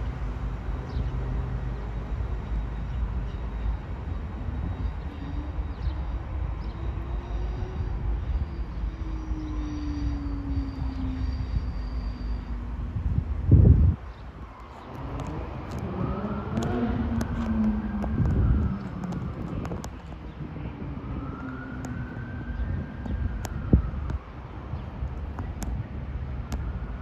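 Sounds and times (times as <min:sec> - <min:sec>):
train rumbling: 0:00.0 - 0:27.0
faint high whine: 0:01.2 - 0:14.0.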